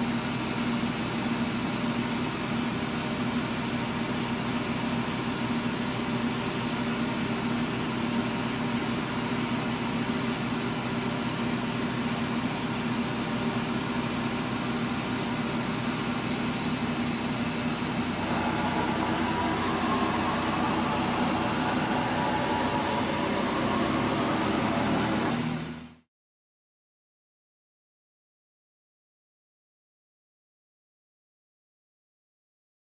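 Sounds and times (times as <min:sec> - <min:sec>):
milling machine hum and whine: 0:00.0 - 0:26.0.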